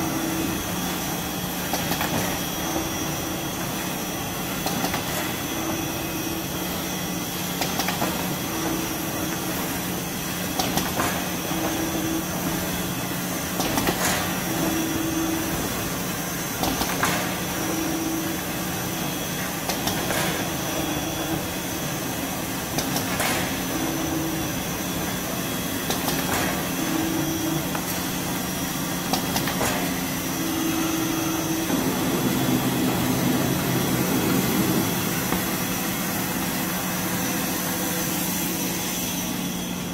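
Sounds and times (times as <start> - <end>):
cutting machine humming: 30.0 - 39.9.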